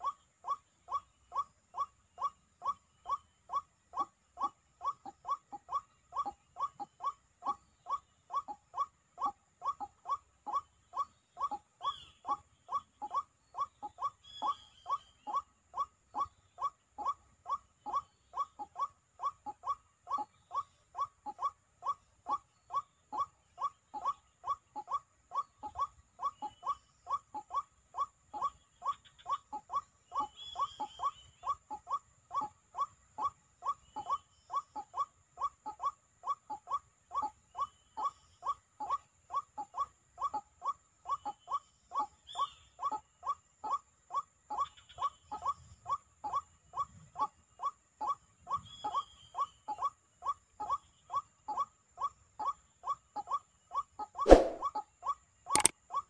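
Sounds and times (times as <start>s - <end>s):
waterhen calls: 54.2s - 54.7s
faint higher chirps: 54.3s - 54.7s.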